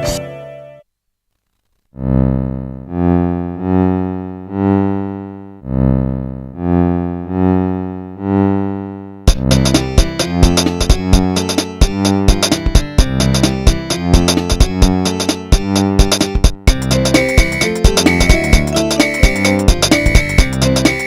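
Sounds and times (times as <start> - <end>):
synth ringtone melody: 16.1 - 21.0
plucked ringtone: 16.7 - 21.0.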